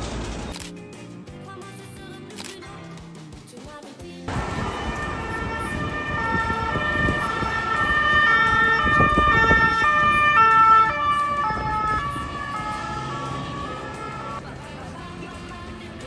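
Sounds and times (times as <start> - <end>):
street traffic noise: 0.0 - 0.7, 4.3 - 16.0
emergency vehicle sirens: 4.3 - 14.4.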